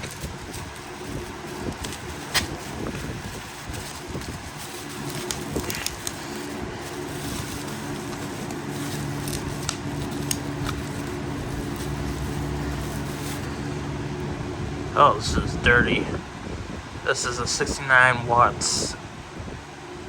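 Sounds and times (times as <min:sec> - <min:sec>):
clicks and crackles of packaging: 0:00.0 - 0:13.6
low mechanical hum: 0:00.0 - 0:20.0.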